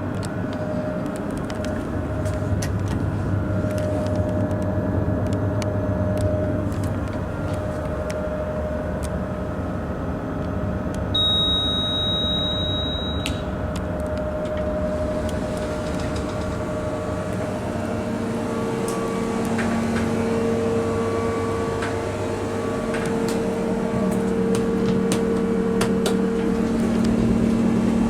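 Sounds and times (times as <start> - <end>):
lift car hum and rumble: 0.0 - 28.0
high steady beep: 11.2 - 13.6.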